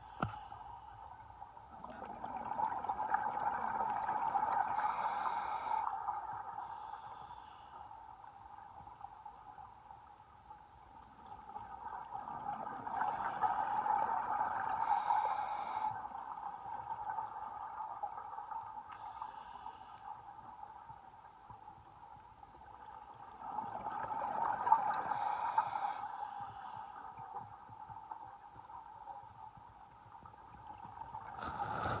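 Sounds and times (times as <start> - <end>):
underwater bubbling exhalation: 31.2 - 32.0.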